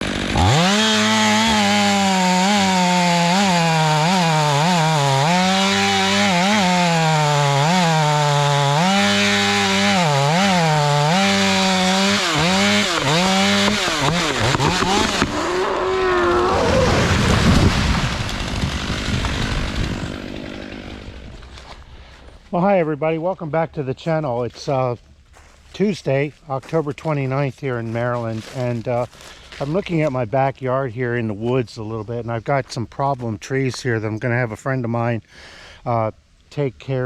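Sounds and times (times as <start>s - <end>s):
chainsaw running at high revs: 0.0s - 21.5s
loud rough rushing noise: 12.3s - 21.3s.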